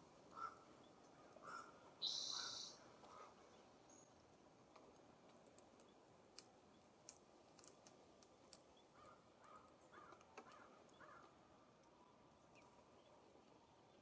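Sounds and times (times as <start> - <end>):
bird call notes: 1.5 - 2.8
birds tapping on wire feeder: 4.8 - 11.4.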